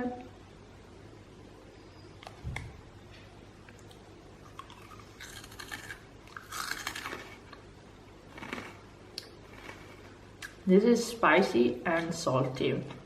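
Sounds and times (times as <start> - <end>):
person chewing crunchy cracker: 4.4 - 7.6, 8.3 - 10.6.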